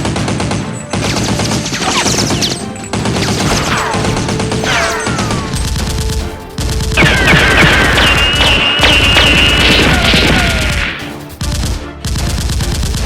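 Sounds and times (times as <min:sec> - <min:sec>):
background music: 0:00.0 - 0:13.0
gunfire sound effects: 0:00.0 - 0:13.0
falling whistles: 0:07.0 - 0:10.7.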